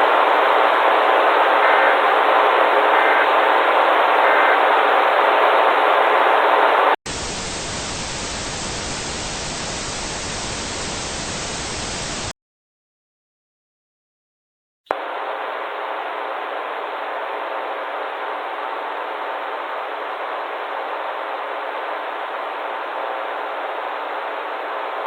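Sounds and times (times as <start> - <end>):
radio static hiss: 0.0 - 12.3, 14.9 - 25.0
tv static hiss: 0.0 - 12.3, 14.9 - 25.0.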